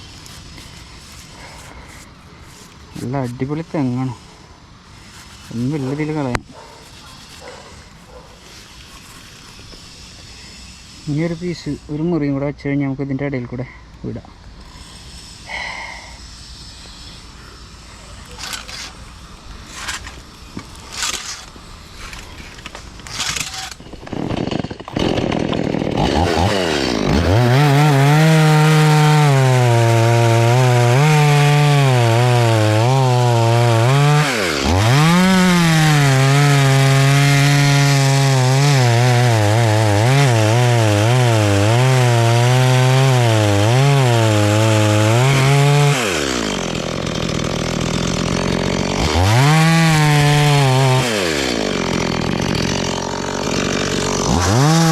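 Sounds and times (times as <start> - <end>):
chainsaw cutting wood: 0.0 - 4.3, 14.6 - 17.4, 18.2 - 54.9.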